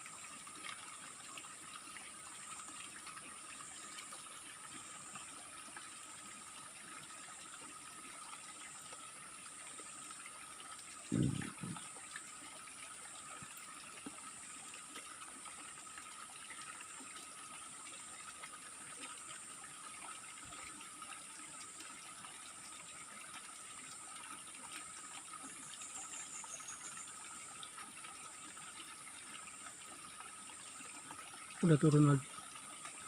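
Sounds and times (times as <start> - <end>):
low steady tone: 11.0 - 11.9.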